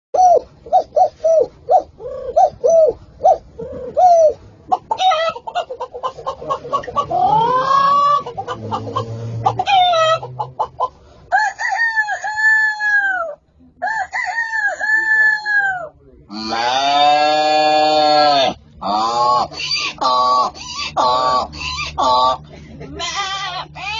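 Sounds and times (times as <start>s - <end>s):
chickens clucking: 0.2s - 16.8s, 17.9s - 23.9s
chicken cackling: 0.2s - 23.9s
rooster crowing: 6.9s - 15.9s.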